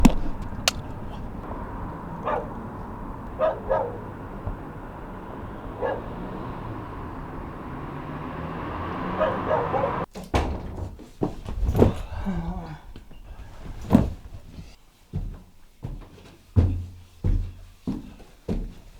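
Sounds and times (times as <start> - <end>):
dog barking: 1.2 - 10.1.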